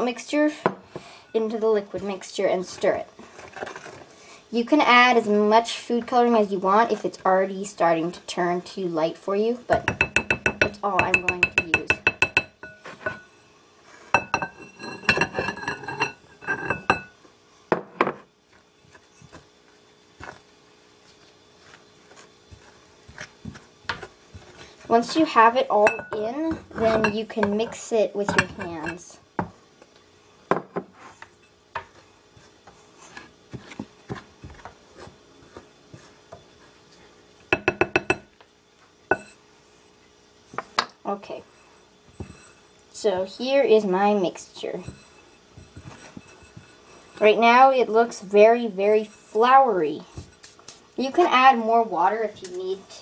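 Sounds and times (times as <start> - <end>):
spoon scraping mixing bowl: 44.7 - 47.3.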